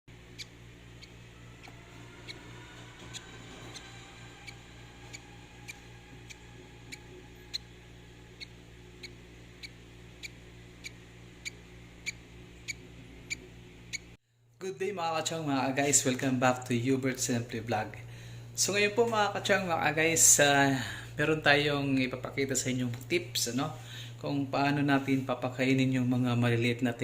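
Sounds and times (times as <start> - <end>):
steady low hum: 0.0 - 27.0
chicks peeping: 0.4 - 7.6.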